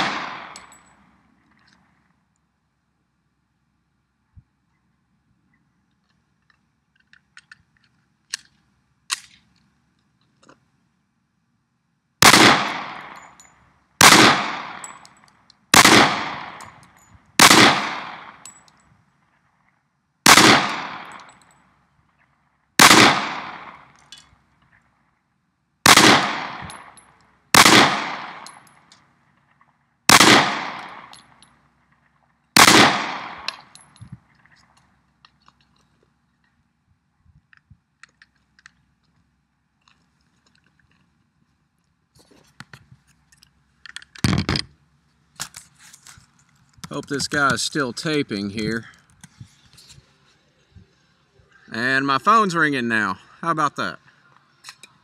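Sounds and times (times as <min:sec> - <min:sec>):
pistol shots with echo: 0:00.0 - 0:00.8, 0:12.2 - 0:13.4, 0:14.0 - 0:15.1, 0:15.7 - 0:16.8, 0:17.4 - 0:18.5, 0:20.2 - 0:21.3, 0:22.8 - 0:24.0, 0:25.8 - 0:28.6, 0:30.1 - 0:31.2, 0:32.6 - 0:33.8.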